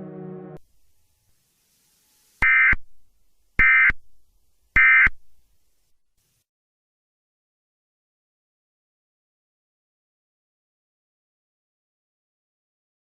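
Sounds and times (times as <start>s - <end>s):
low droning music tone: 0.0s - 0.6s.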